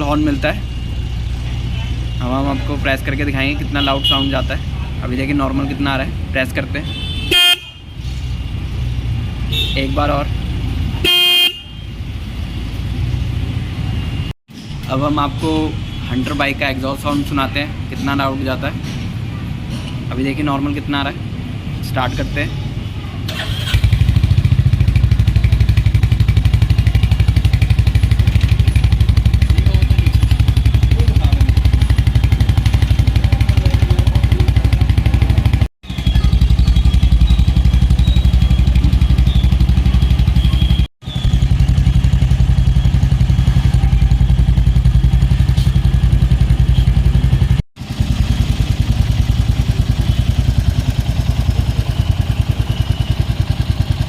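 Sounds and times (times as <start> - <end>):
motorcycle engine idling: 23.3 - 54.0.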